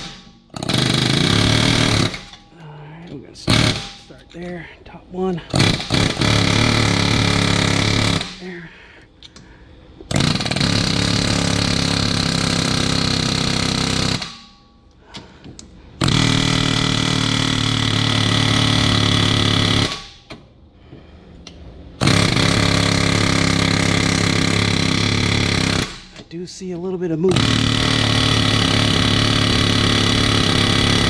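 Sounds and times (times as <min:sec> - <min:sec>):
pneumatic air hammer firing: 0:00.0 - 0:02.5, 0:03.4 - 0:04.1, 0:05.5 - 0:08.6, 0:10.1 - 0:14.6, 0:16.0 - 0:20.4, 0:22.0 - 0:26.3, 0:27.3 - 0:31.0.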